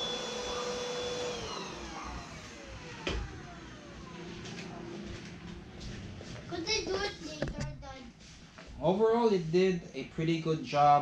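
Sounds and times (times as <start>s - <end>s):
vacuum motor whining: 0.0s - 5.7s.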